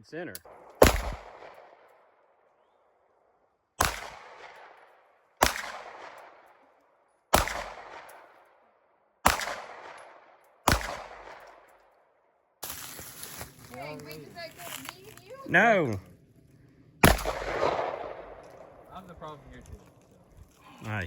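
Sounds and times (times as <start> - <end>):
gunshots with echo: 0.5 - 1.8, 3.8 - 6.5, 7.3 - 8.4, 9.2 - 11.7, 17.0 - 19.0.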